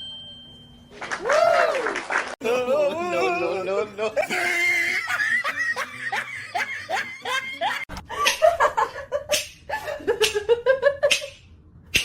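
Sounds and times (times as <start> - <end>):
person laughing: 2.4 - 11.2.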